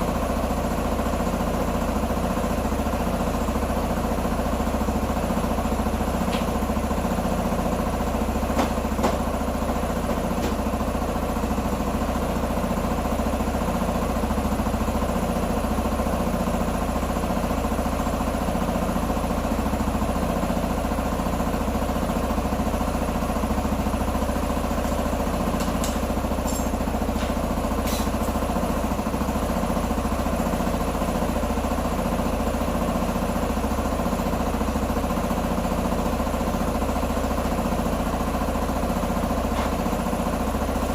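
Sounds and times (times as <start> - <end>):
motorcycle engine idling: 0.0 - 40.9.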